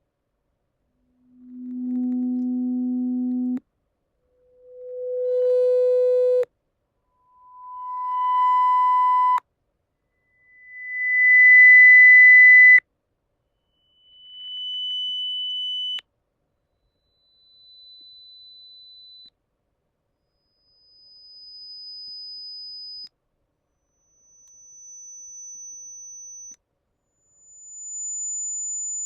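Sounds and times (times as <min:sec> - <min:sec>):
pure test tones: 0:01.2 - 0:03.6.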